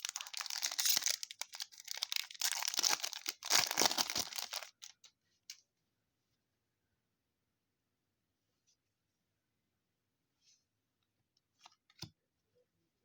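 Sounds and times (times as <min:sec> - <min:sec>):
wrapper crinkling and tearing: 0:00.0 - 0:05.0.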